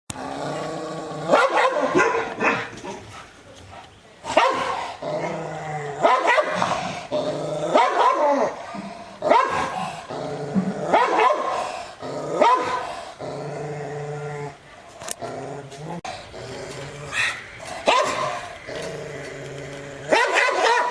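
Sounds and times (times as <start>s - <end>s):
dog growling: 0.1s - 1.4s, 4.8s - 20.4s
dog barking aggressively: 1.3s - 3.0s, 4.3s - 4.9s, 6.0s - 7.0s, 7.7s - 8.6s, 9.2s - 9.9s, 10.9s - 11.7s, 12.4s - 13.0s, 17.1s - 18.9s, 20.0s - 20.9s.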